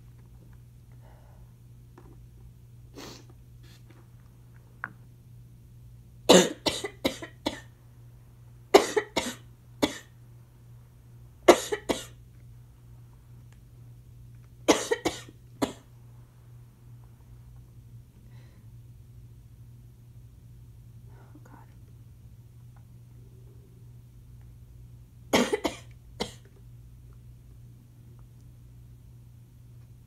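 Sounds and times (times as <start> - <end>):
person coughing harshly: 6.3 - 7.7, 8.7 - 10.1, 11.5 - 12.2, 14.7 - 15.9, 25.3 - 26.4.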